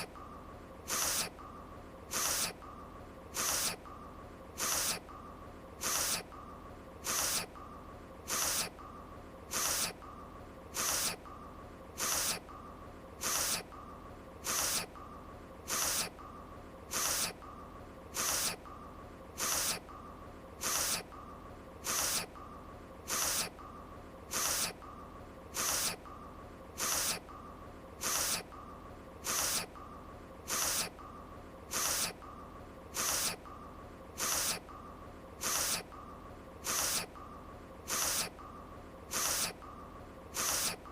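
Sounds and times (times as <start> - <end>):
faint hiss: 0.0 - 40.9
voiced nasal sniffle: 0.9 - 1.4, 2.1 - 2.6, 3.3 - 3.8, 4.6 - 5.0, 5.8 - 6.3, 7.0 - 7.5, 8.3 - 8.7, 9.5 - 10.0, 10.7 - 11.2, 12.0 - 12.4, 13.2 - 13.7, 14.4 - 14.9, 15.7 - 16.1, 16.9 - 17.4, 18.1 - 18.6, 19.4 - 19.8, 20.6 - 21.1, 21.8 - 22.3, 23.1 - 23.5, 24.3 - 24.8, 25.5 - 26.0, 26.8 - 27.2, 28.0 - 28.5, 29.2 - 29.7, 30.5 - 30.9, 31.7 - 32.2, 32.9 - 33.4, 34.2 - 34.6, 35.4 - 35.9, 36.6 - 37.1, 37.9 - 38.3, 39.1 - 39.6, 40.3 - 40.8.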